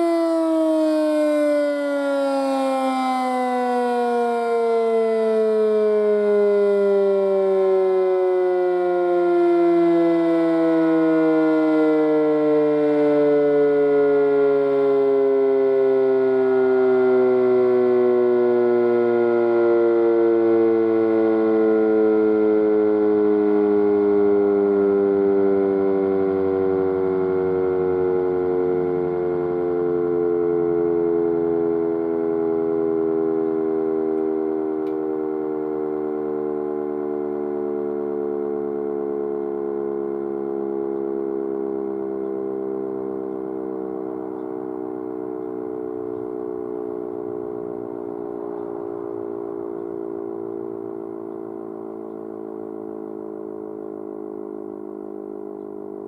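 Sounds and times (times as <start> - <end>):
mechanical siren winding down: 0.0 - 56.0.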